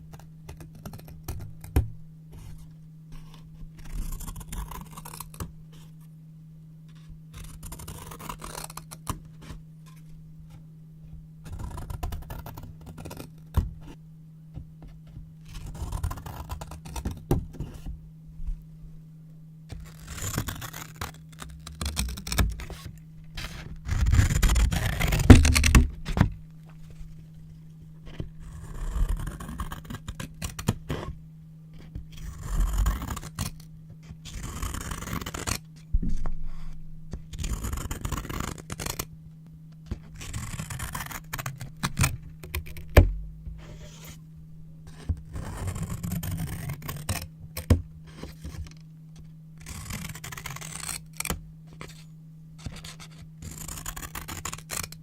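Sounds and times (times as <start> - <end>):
steady low hum: 0.0 - 55.0
scissors cutting paper: 3.2 - 5.5, 6.9 - 10.0, 11.5 - 14.0, 15.4 - 17.9, 19.7 - 26.3, 28.1 - 31.1, 32.2 - 33.6, 34.2 - 35.6, 37.3 - 39.1, 39.9 - 43.0, 44.9 - 48.8, 49.6 - 52.0, 52.6 - 55.0.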